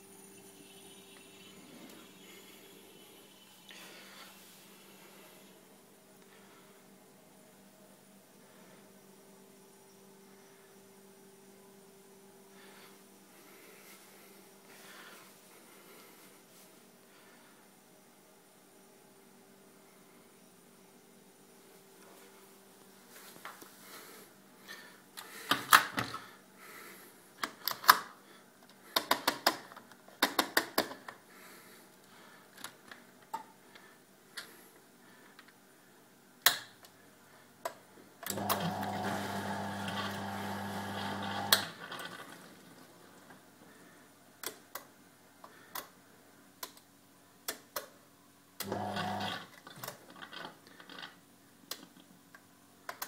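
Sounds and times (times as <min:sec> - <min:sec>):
electric motor humming: 0:38.3 - 0:41.8.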